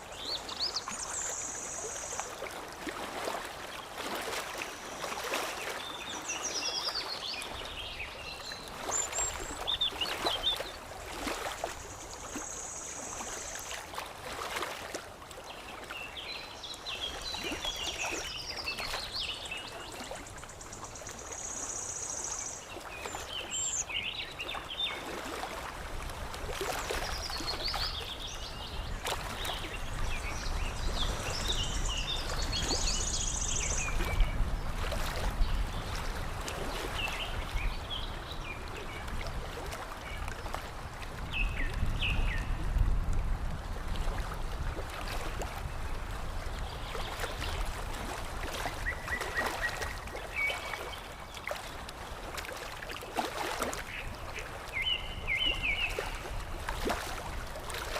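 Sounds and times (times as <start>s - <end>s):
water lapping and trickling: 0.0s - 57.9s
songbirds chirping: 15.4s - 25.6s.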